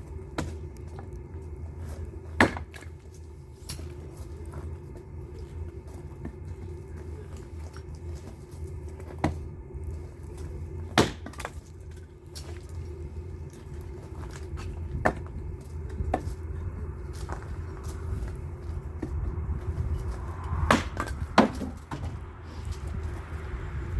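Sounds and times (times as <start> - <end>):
firewood knocking and cracking: 0.0 - 12.7, 13.5 - 19.7, 20.3 - 22.2
steady low hum: 0.0 - 23.9.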